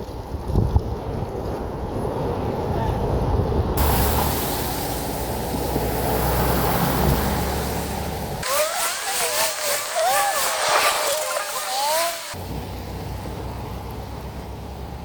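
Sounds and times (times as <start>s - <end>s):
wind rushing over microphone: 0.0s - 4.0s
road noise: 0.0s - 15.0s.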